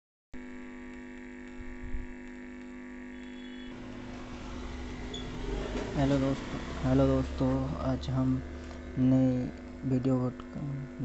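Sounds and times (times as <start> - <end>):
electrical mains hum: 0.4 - 11.0.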